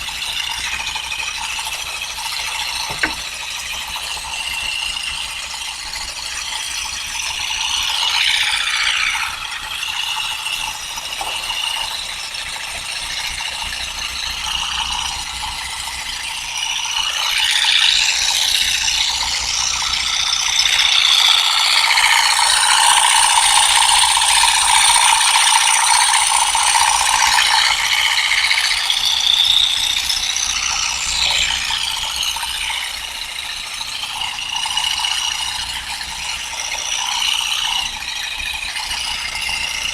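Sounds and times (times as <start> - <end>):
olive harvesting tool rattling: 1.5 - 4.2.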